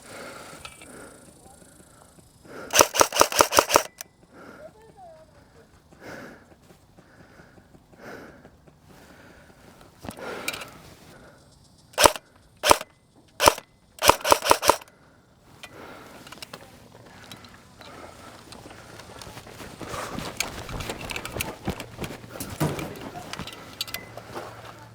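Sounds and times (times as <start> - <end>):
airsoft gun shots: 2.7 - 4.0, 12.0 - 14.8.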